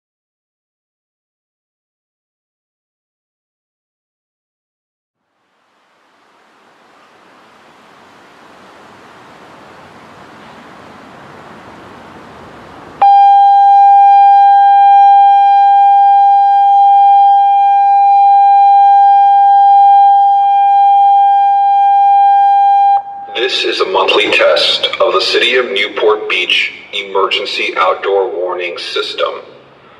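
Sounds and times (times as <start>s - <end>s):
soft hiss: 5.2s - 13.0s
steady alert tone from speakers: 13.0s - 23.8s.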